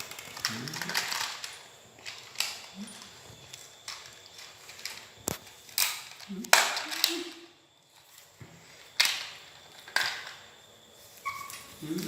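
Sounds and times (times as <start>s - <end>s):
toy clicks and rattles: 0.0s - 3.1s.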